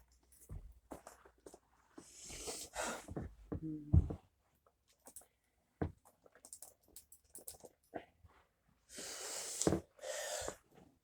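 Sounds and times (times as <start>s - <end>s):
person exhaling or sniffing: 8.9s - 10.6s.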